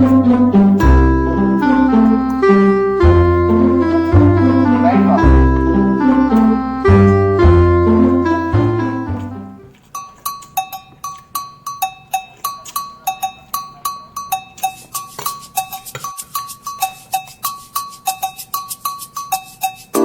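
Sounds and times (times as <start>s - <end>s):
bell-like percussion pattern: 0.0s - 9.4s, 10.0s - 20.0s.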